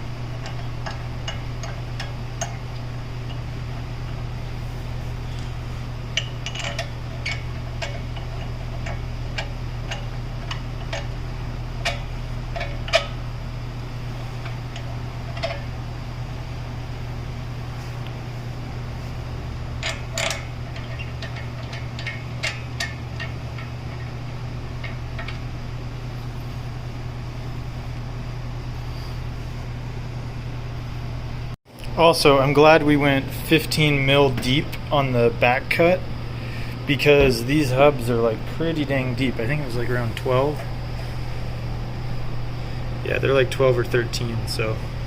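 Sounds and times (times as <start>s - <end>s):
steady low hum: 0.0s - 45.0s
metal bolts clicking and clinking: 0.3s - 2.6s, 6.1s - 11.2s, 11.8s - 13.2s, 14.4s - 15.7s, 19.8s - 25.4s.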